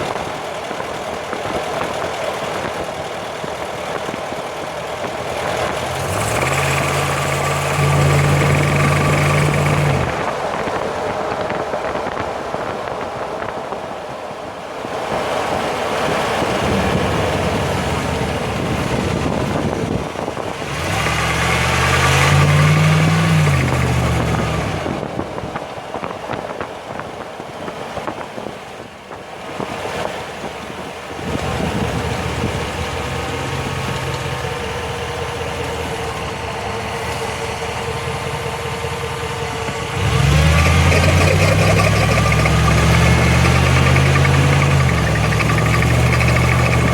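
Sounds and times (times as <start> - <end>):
drivetrain whine: 0.0 - 13.7, 16.6 - 27.1, 31.1 - 46.9
car engine accelerating: 1.3 - 11.1, 16.4 - 25.2, 31.1 - 46.9.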